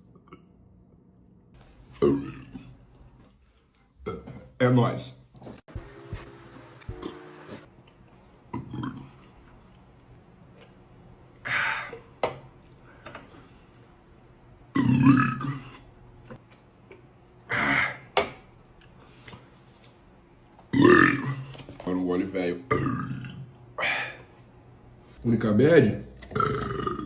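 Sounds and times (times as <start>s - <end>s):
man burping: 2.0s - 2.6s, 14.8s - 15.8s, 20.8s - 21.4s, 26.2s - 27.0s.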